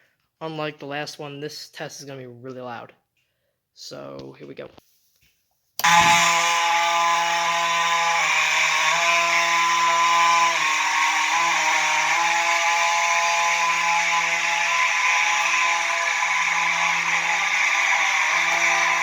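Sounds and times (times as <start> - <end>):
fire alarm horns blaring: 5.8 - 19.0.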